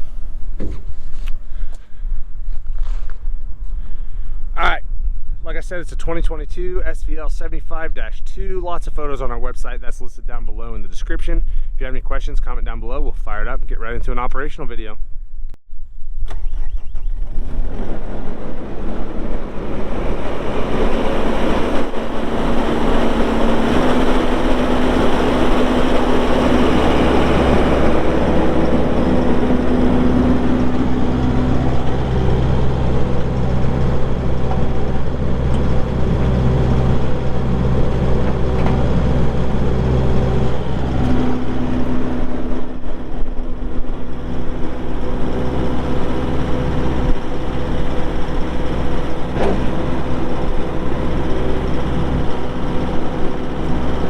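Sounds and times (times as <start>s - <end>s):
diesel engine running: 0.0s - 4.3s, 17.0s - 54.0s
high whine: 13.0s - 54.0s
deep engine note: 16.3s - 54.0s.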